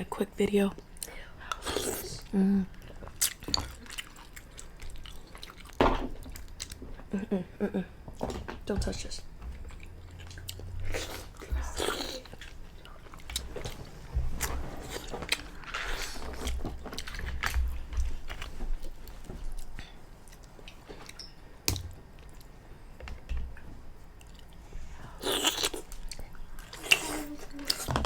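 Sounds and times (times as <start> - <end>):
chewing and biting mussels: 25.2 - 28.0.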